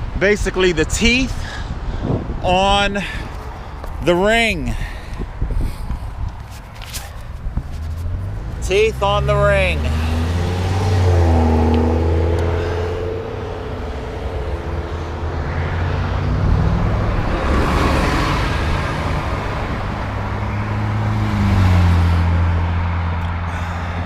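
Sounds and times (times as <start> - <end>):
low engine hum of traffic: 0.0 - 24.0
vehicles passing by: 0.0 - 24.0.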